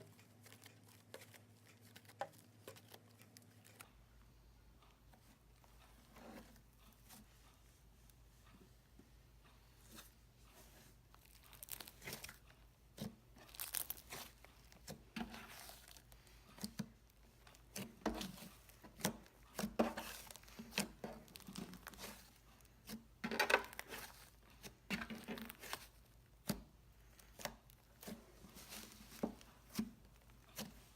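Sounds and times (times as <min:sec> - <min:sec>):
slime squishing and crackling: 0:11.1 - 0:30.9
slime popping: 0:13.5 - 0:14.3.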